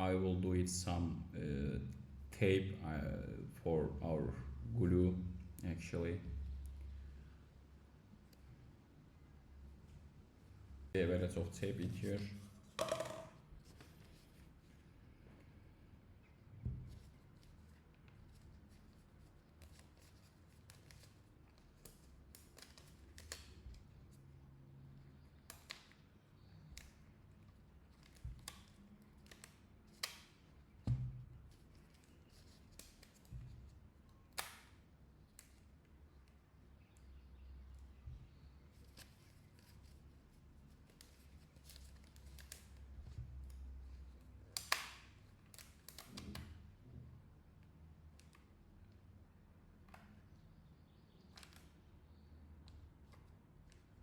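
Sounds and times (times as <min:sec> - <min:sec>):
adhesive tape rustling: 0:16.8 - 0:24.2, 0:25.2 - 0:36.4, 0:38.6 - 0:46.4.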